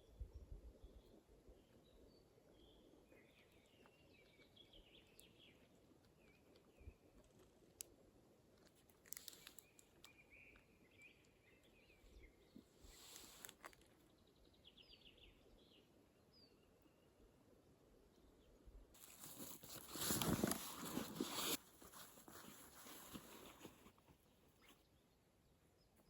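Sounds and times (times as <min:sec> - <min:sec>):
distant small birds chirping: 0:00.0 - 0:07.9, 0:08.6 - 0:26.0
brief rustle: 0:08.6 - 0:10.1, 0:19.0 - 0:24.8.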